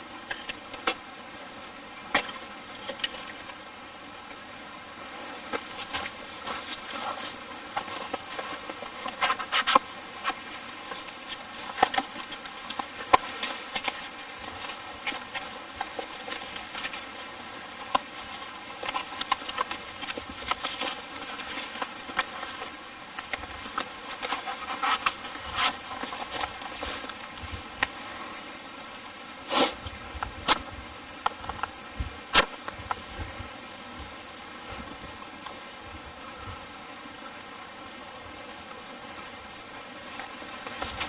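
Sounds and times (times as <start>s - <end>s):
faint steady hiss: 0.0s - 41.0s
wood campfire crackling: 5.4s - 28.4s.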